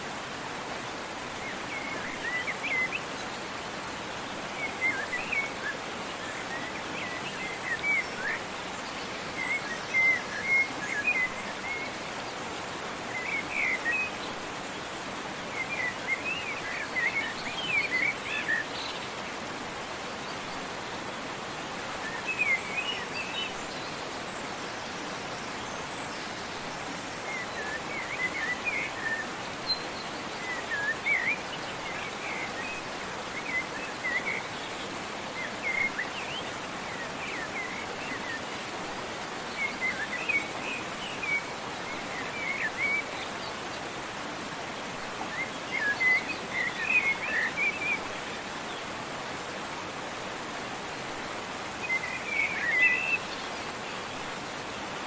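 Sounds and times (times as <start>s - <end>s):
songbirds twittering: 0.0s - 55.0s
waterfall rushing: 0.0s - 55.0s.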